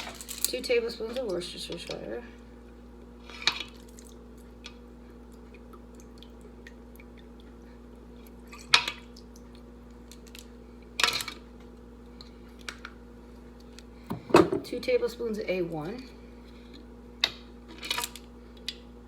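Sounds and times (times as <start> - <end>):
steady low hum: 0.0 - 19.0
kitchen knocks and clinks: 14.1 - 14.7.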